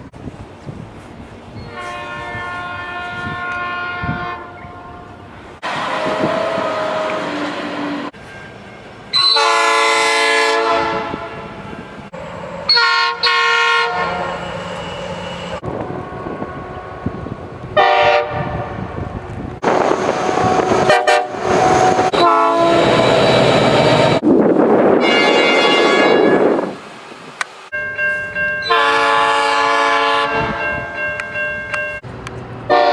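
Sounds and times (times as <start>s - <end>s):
passing train running noise: 0.0s - 32.9s
locomotive air horn blasts: 1.7s - 8.2s, 9.1s - 11.6s, 12.7s - 14.5s, 15.6s - 18.9s, 19.7s - 23.5s, 25.0s - 26.6s, 28.6s - 30.9s, 32.7s - 32.9s.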